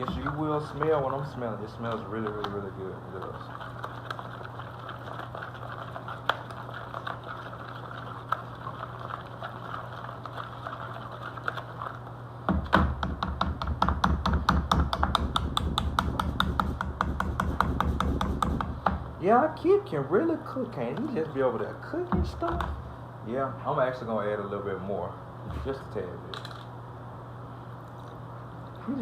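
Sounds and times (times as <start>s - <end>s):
utensil clicking against bowl: 0.0s - 3.3s
steady low hum: 0.0s - 29.0s.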